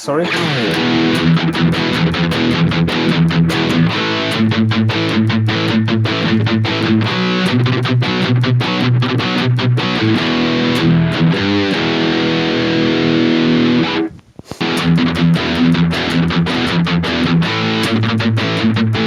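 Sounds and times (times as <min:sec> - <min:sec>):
distorted electric guitar riffs: 0:00.0 - 0:19.0.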